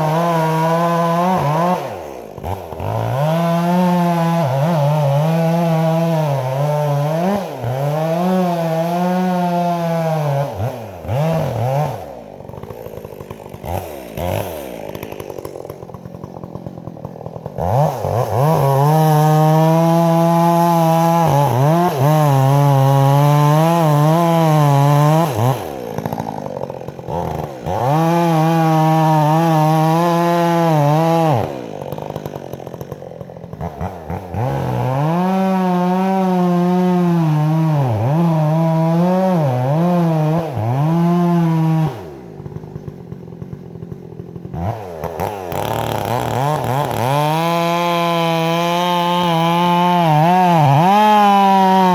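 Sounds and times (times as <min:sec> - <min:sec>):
chainsaw cutting wood: 0:00.0 - 0:51.9
chainsaw idling: 0:00.0 - 0:51.9.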